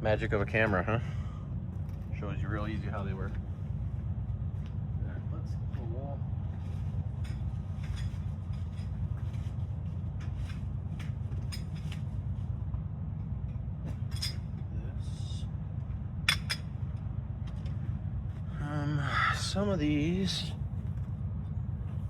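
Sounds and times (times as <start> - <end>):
low hum: 0.0 - 22.0
metal parts clinking: 14.0 - 14.6.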